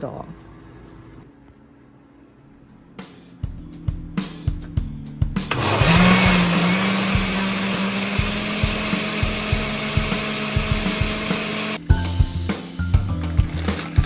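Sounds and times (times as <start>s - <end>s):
blender running: 5.5s - 11.8s.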